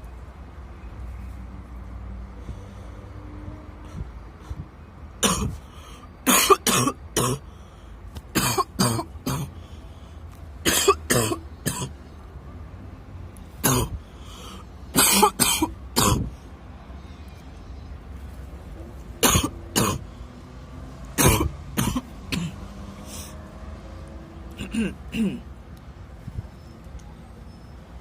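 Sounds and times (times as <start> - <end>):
person coughing harshly: 5.2 - 5.6, 6.2 - 7.4, 8.3 - 9.5, 10.6 - 11.9, 13.6 - 14.0, 15.0 - 16.3, 19.2 - 20.0, 21.2 - 22.6, 24.6 - 25.4.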